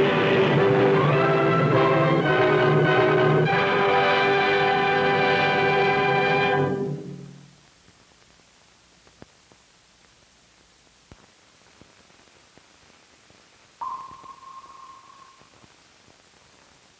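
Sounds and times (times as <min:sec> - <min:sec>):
film soundtrack hiss: 0:00.0 - 0:16.9
clicks and pops: 0:13.8 - 0:15.3
steady beep: 0:13.8 - 0:15.4.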